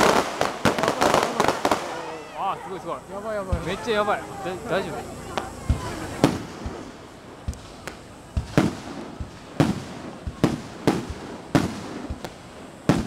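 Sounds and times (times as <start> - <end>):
fireworks bursting: 0.0 - 13.0.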